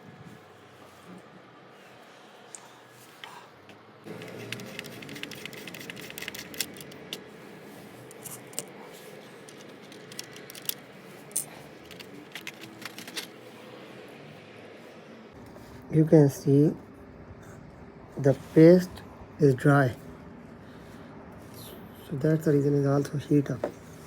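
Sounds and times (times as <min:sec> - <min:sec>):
low background hum: 0:00.0 - 0:24.0
small clicks and rattles: 0:09.4 - 0:13.4.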